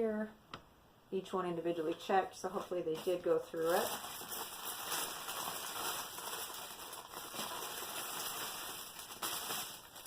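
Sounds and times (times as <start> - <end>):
plastic bags rustling and crinkling: 2.4 - 10.0.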